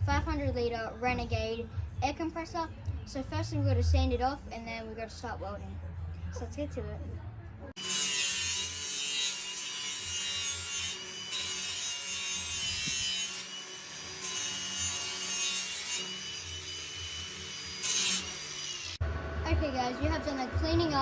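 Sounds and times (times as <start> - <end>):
power tool sanding steel: 7.8 - 19.0.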